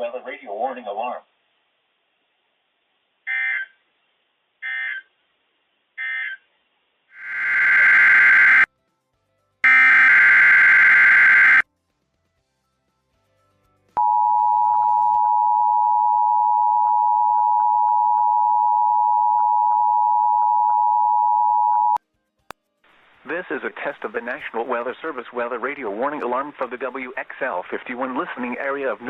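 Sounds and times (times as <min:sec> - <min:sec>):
buzzy digital data bursts: 0:07.2 - 0:08.7
steady alarm tone: 0:07.2 - 0:08.7, 0:09.6 - 0:11.6.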